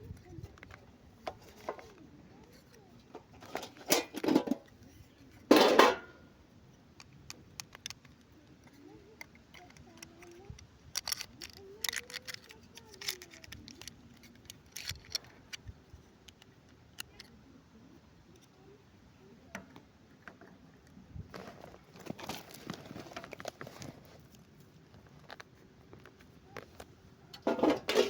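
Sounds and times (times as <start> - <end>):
plastic toys clicking and tapping: 7.0 - 17.3.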